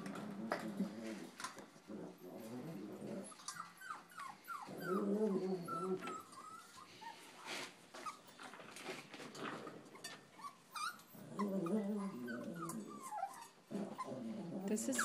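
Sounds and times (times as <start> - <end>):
puppies scuffling: 0.0 - 14.0
puppies play growling: 0.0 - 15.0
puppies yipping and whimpering: 3.2 - 8.4, 9.9 - 14.1.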